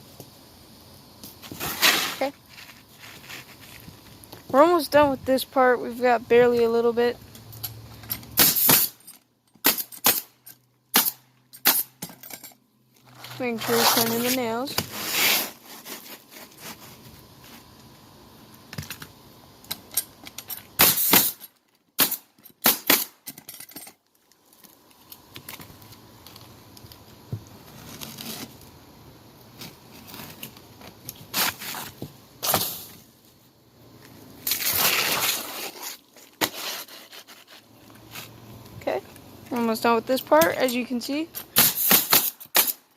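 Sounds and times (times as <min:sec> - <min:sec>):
nail gun shots: 0:08.4 - 0:09.0, 0:09.6 - 0:10.3, 0:20.8 - 0:21.4, 0:22.0 - 0:23.2, 0:41.6 - 0:42.8.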